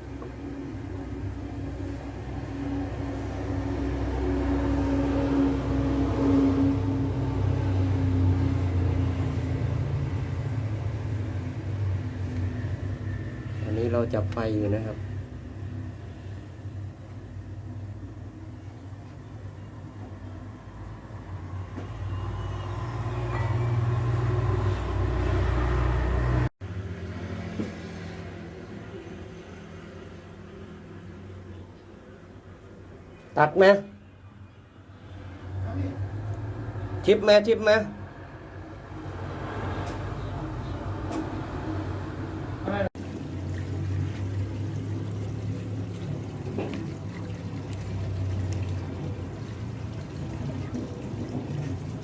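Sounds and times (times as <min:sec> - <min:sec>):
low machine hum: 0:40.0 - 0:52.0.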